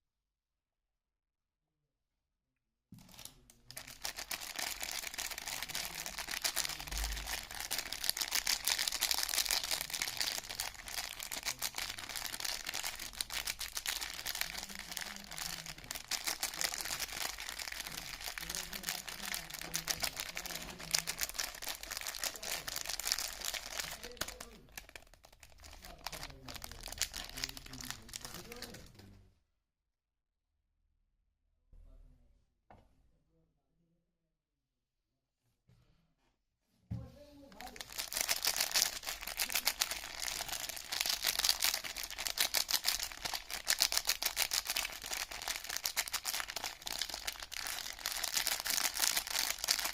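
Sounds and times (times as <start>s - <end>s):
soap wrapper crinkling: 3.0s - 29.0s, 37.5s - 49.9s.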